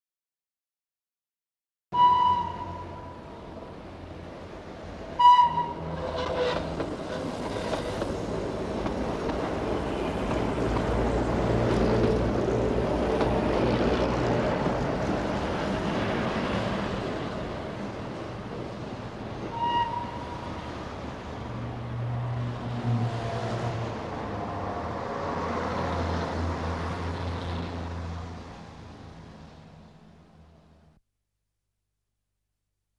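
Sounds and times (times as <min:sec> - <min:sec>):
locomotive horn toots: 0:02.0 - 0:03.2, 0:05.2 - 0:08.0, 0:19.5 - 0:20.5
locomotive running on track: 0:02.0 - 0:25.4.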